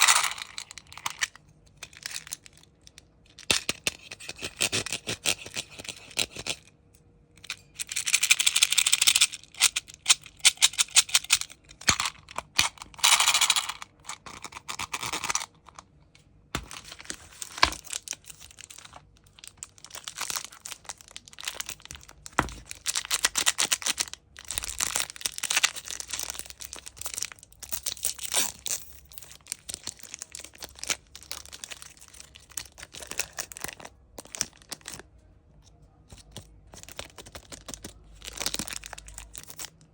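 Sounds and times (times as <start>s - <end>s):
wrappers crinkling and tearing: 16.7s - 35.0s, 36.7s - 39.7s.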